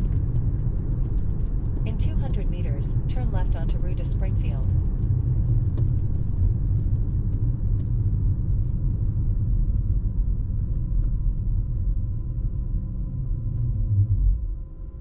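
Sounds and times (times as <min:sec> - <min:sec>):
tyres rumbling on snowy road: 0:00.0 - 0:10.2.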